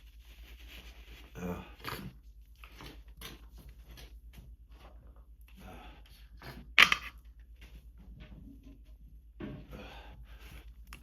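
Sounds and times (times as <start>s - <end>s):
breathy inhale: 9.7s - 10.7s.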